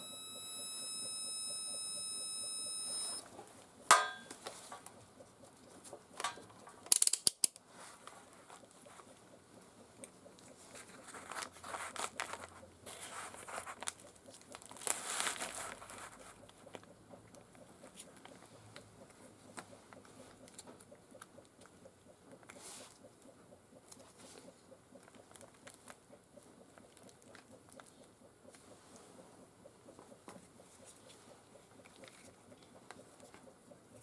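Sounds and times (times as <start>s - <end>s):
sharp clicks and taps: 16.4s - 34.0s.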